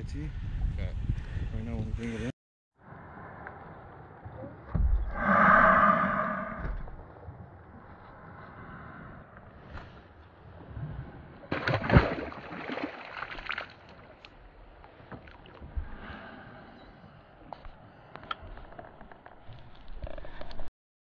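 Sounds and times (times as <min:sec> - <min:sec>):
water splashing at boat: 0:11.2 - 0:15.7.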